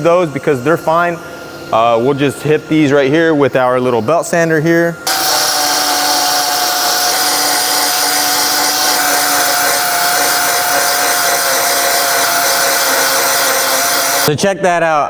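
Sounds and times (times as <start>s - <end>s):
belt sander grinding steel: 5.1s - 14.3s.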